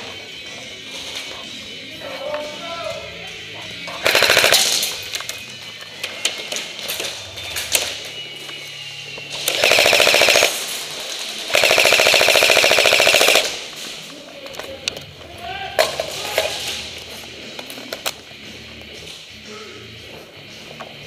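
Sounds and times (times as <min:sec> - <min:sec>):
airsoft gun automatic fire: 0:04.0 - 0:04.9, 0:09.4 - 0:10.7, 0:11.5 - 0:13.7.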